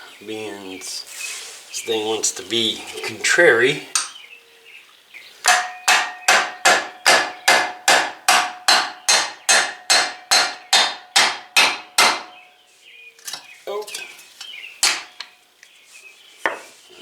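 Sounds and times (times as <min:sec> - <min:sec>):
hammer blows on metal: 0:05.5 - 0:12.4.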